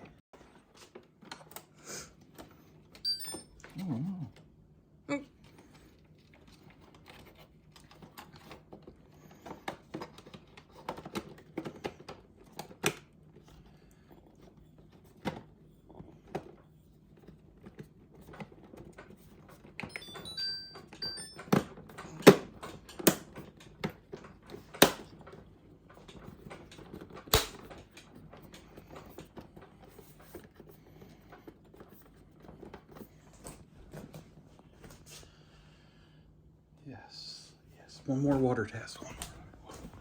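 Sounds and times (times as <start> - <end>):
electronic beeps: 3.1 - 3.5, 19.9 - 21.4
plastic parts clicking and knocking: 6.2 - 13.6, 14.3 - 34.1.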